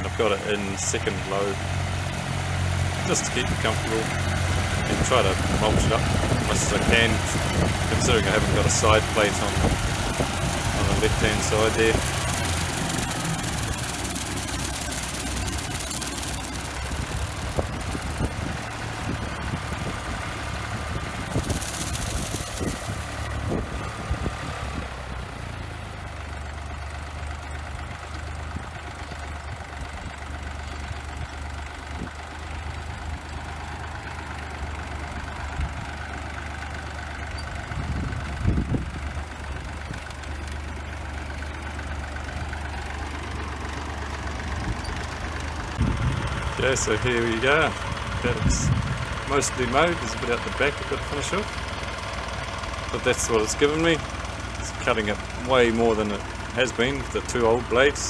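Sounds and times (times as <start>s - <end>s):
tractor engine running: 0.0s - 58.0s.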